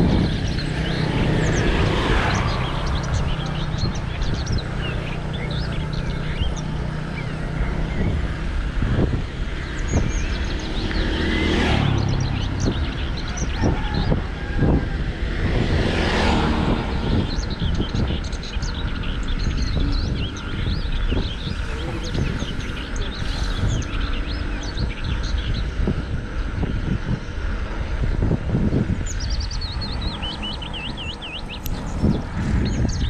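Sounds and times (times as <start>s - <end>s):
bicycle tyres rolling on road: 0.0s - 33.0s.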